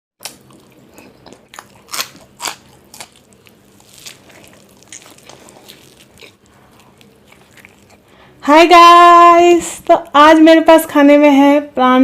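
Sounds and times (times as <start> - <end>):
crunchy bites of food: 0.2 - 8.1
chewing: 0.2 - 8.3.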